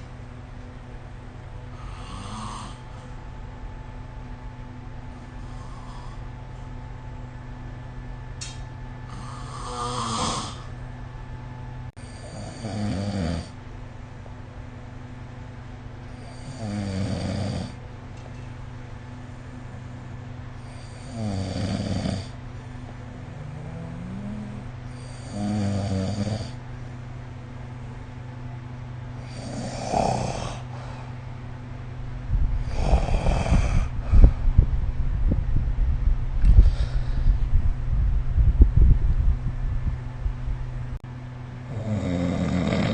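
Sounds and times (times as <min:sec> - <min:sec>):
steady low hum: 0:00.0 - 0:42.9
person snoring: 0:01.7 - 0:02.8, 0:05.4 - 0:06.3, 0:09.1 - 0:10.7, 0:12.0 - 0:13.6, 0:16.2 - 0:17.8, 0:20.6 - 0:22.4, 0:23.2 - 0:26.6, 0:29.2 - 0:31.1, 0:32.6 - 0:34.3, 0:41.7 - 0:42.9
quiet breathing: 0:01.7 - 0:03.1, 0:05.4 - 0:06.5, 0:36.4 - 0:37.5
low crackling rumble: 0:32.0 - 0:41.0.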